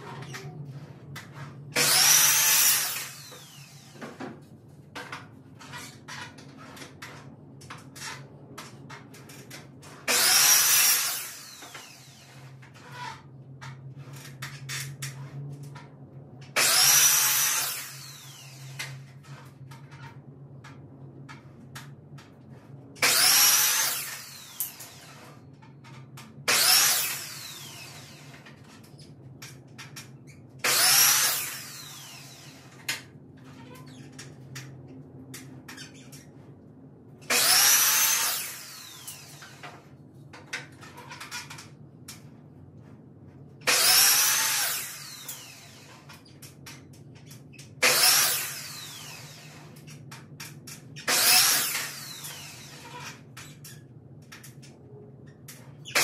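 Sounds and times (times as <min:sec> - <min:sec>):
power drill whining: 0:01.8 - 0:04.1, 0:10.1 - 0:12.6, 0:16.6 - 0:18.9, 0:23.0 - 0:25.4, 0:26.5 - 0:28.4, 0:30.6 - 0:32.8, 0:37.3 - 0:39.7, 0:43.7 - 0:46.2, 0:47.8 - 0:49.9, 0:51.1 - 0:53.2.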